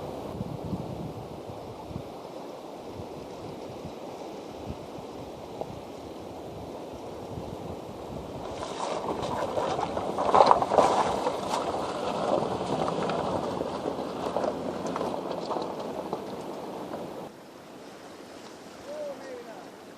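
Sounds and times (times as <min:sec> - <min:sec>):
river water rushing: 0:01.2 - 0:19.9
water splashing: 0:08.4 - 0:17.3.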